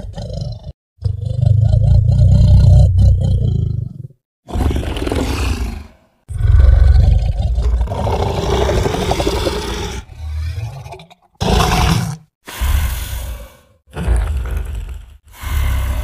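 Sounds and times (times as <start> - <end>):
deep monster roars: 4.5 - 16.0
monster growl: 4.5 - 16.0.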